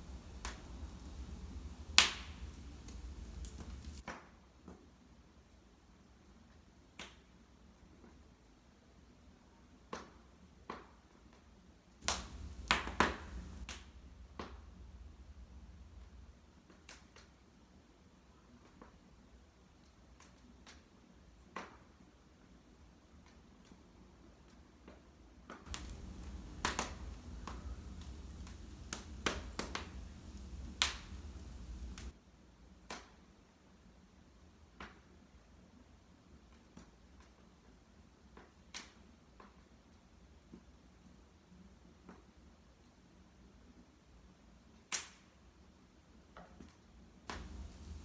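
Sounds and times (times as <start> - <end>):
fire popping: 0.0 - 4.0, 12.0 - 13.7, 25.7 - 32.1, 47.3 - 48.0
flames rushing: 0.0 - 4.0, 12.0 - 13.7, 25.7 - 32.1, 47.3 - 48.0
wood fire crackling: 0.0 - 4.0, 12.0 - 13.8, 25.7 - 32.2, 47.3 - 48.0.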